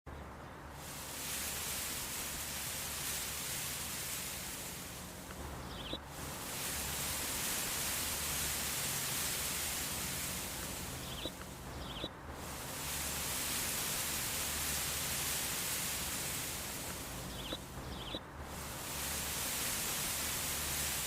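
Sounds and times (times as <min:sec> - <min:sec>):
steady breeze: 0:00.1 - 0:21.0
faint high chirps: 0:05.6 - 0:06.0, 0:09.9 - 0:12.2, 0:16.8 - 0:18.3.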